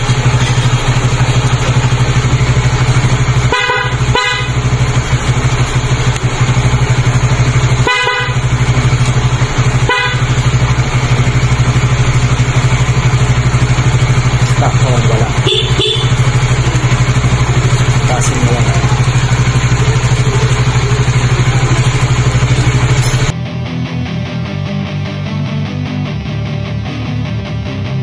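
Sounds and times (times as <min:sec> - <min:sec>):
motorcycle engine idling: 0:00.0 - 0:23.3
loud horn short beeps: 0:03.5 - 0:04.6, 0:07.8 - 0:08.4, 0:09.8 - 0:10.4, 0:15.4 - 0:16.4.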